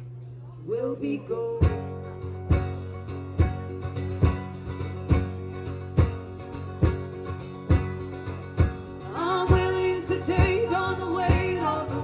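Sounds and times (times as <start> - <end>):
strong drum beat: 1.6 - 9.8
strummed guitar chords: 1.6 - 12.0.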